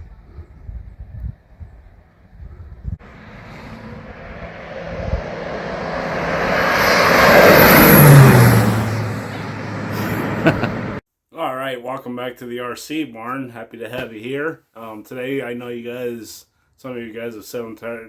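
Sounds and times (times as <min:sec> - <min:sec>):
airplane flying past: 0:03.0 - 0:11.0.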